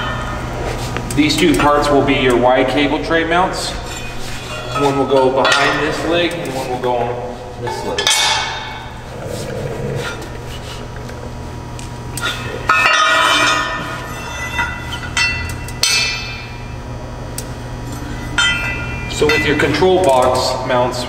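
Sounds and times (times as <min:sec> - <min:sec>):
loud ringing metal clanks: 0:01.6 - 0:09.1, 0:12.2 - 0:16.9, 0:17.7 - 0:21.0.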